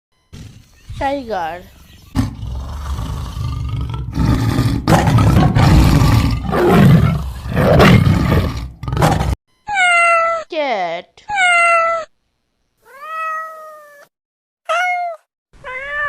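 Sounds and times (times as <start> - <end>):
tiger growling and roaring: 1.6 - 9.4.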